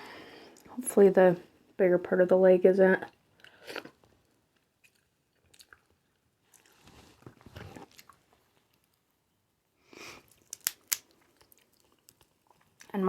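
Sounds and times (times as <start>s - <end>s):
close chewing and mouth noises: 3.1s - 9.4s, 10.2s - 13.0s.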